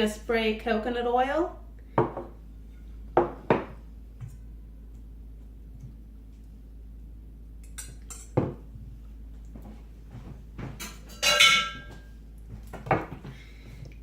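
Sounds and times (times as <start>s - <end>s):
dishes and utensils clattering: 10.7s - 12.1s.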